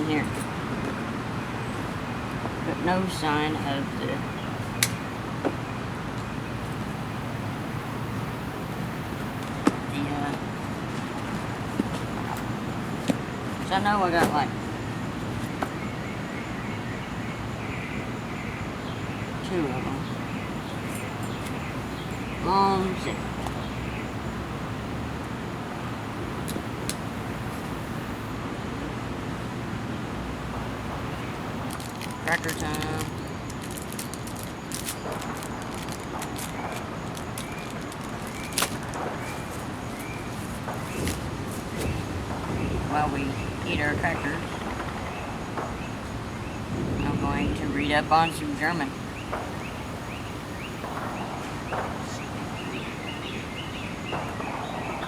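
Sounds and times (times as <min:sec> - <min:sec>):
small birds chirping: 0:01.3 - 0:29.1, 0:30.5 - 0:47.4
wind buffeting microphone: 0:20.0 - 0:50.2
rustling: 0:31.6 - 0:42.2.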